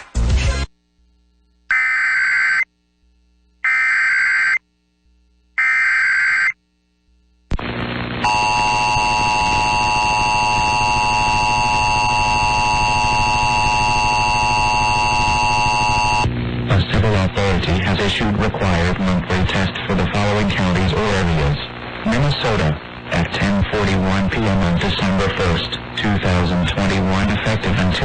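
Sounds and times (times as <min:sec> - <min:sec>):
buzzing data bursts: 0:08.1 - 0:16.6.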